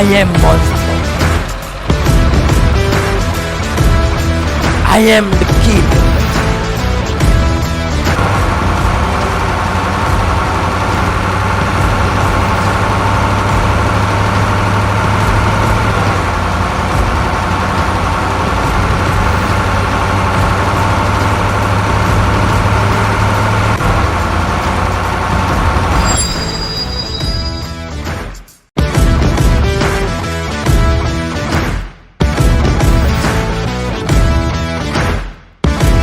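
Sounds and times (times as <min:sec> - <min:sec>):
heavy vehicle engine idling: 0:00.0 - 0:26.5.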